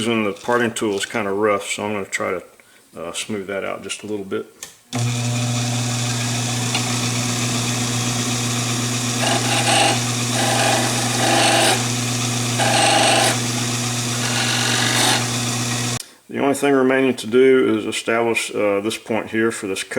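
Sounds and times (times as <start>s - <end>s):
turning tool cutting wood: 5.0s - 16.0s
wood lathe motor hum: 5.0s - 16.0s.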